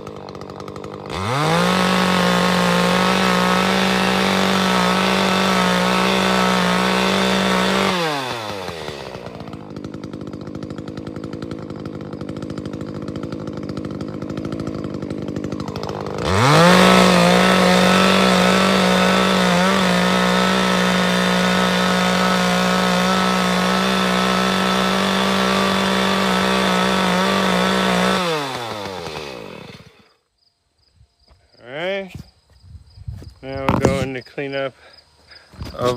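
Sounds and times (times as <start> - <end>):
chainsaw engine revving: 0.0 - 30.2.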